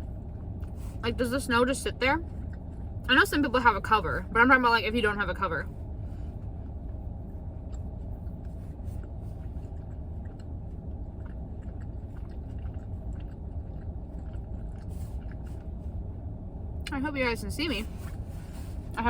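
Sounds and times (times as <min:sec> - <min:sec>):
car interior rumble: 0:00.0 - 0:19.0
person chewing: 0:06.3 - 0:16.0.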